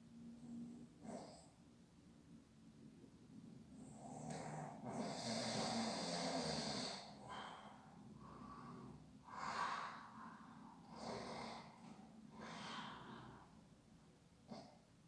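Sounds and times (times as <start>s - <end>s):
snort-like breath: 0.9s - 1.6s, 3.8s - 13.6s
person snoring: 4.2s - 7.2s.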